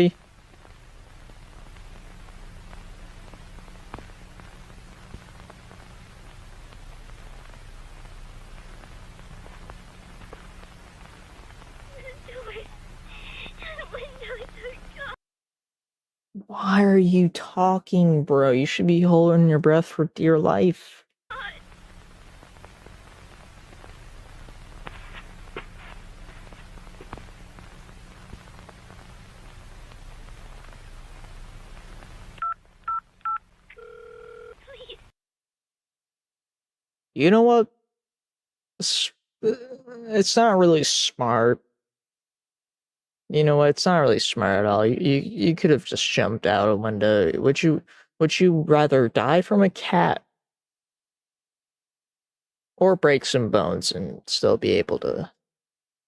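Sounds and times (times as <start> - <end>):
low steady hum: 0.0 - 15.2, 21.3 - 35.0
static hiss: 0.0 - 15.2, 21.3 - 35.1
sharp clicks and crackles: 0.4 - 13.0, 21.6 - 32.4.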